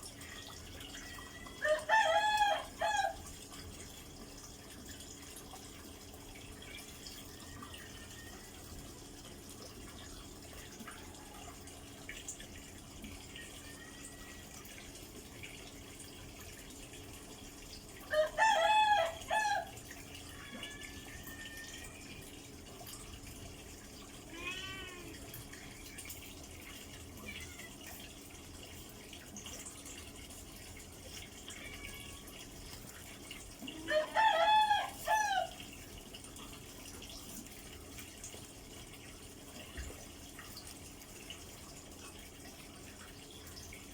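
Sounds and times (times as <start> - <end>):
rooster crowing: 1.6 - 3.2, 18.1 - 19.8, 33.8 - 35.6.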